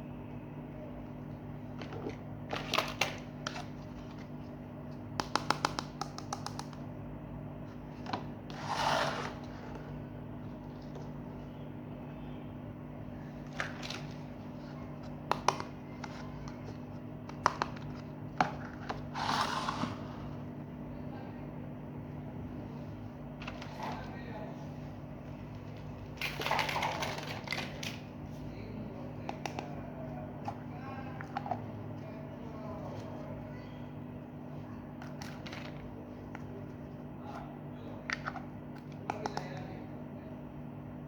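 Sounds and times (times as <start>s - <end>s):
steady low hum: 0.0s - 41.0s
rustling scrapes: 8.5s - 10.0s, 18.6s - 20.5s.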